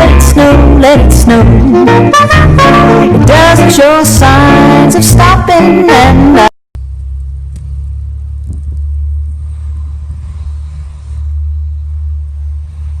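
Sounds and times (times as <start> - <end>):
car driving rumble: 6.8 - 13.0.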